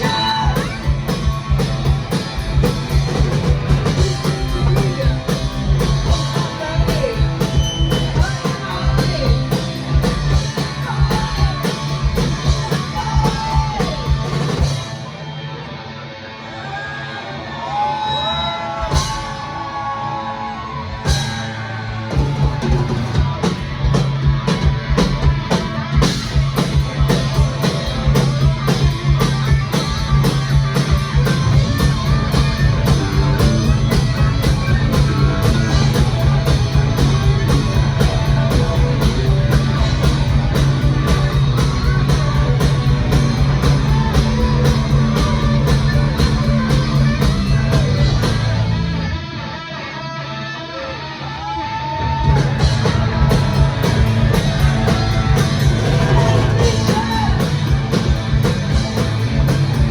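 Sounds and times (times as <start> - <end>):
rock band playing loud: 0.0 - 59.9.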